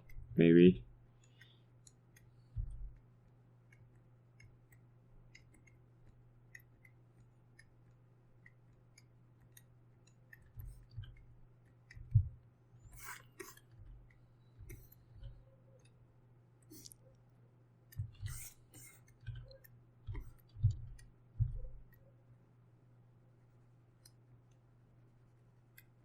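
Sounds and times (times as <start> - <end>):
steady low hum: 0.0 - 26.0
dull low thumps: 20.1 - 21.8.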